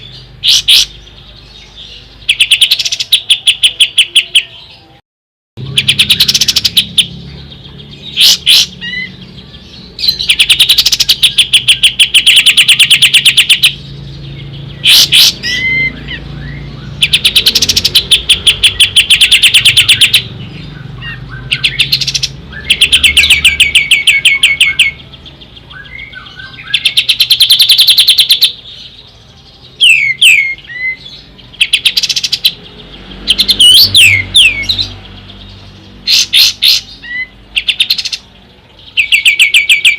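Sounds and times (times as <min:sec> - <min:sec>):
bird singing fast repeated notes: 0:00.0 - 0:04.8, 0:05.6 - 0:39.9
sweeping bird whistles: 0:14.8 - 0:20.2, 0:29.8 - 0:32.6, 0:33.3 - 0:34.9.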